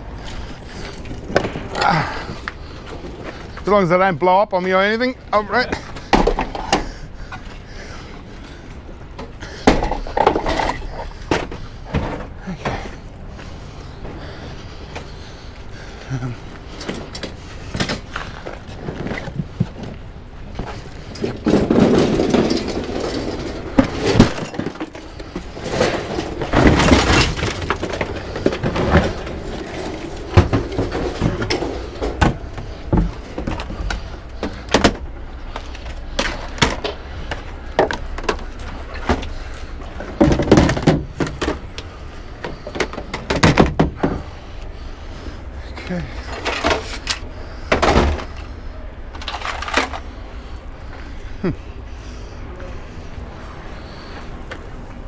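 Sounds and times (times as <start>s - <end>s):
heavy rumbling: 0.0s - 4.0s, 4.9s - 55.0s
equipment knocking and clattering: 5.7s - 15.3s, 16.6s - 44.5s, 46.2s - 50.2s.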